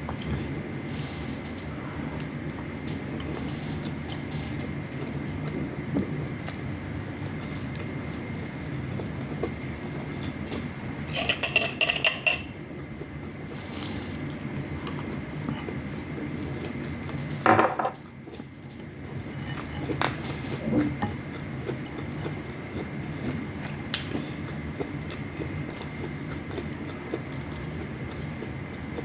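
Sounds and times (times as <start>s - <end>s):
low background hum: 0.0s - 29.0s
cutlery clinking on a plate: 11.1s - 12.6s, 17.5s - 18.0s.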